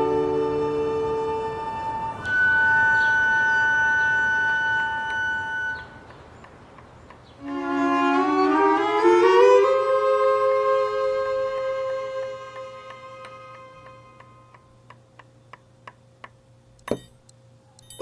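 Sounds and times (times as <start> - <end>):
bowed strings music: 7.4 - 14.6.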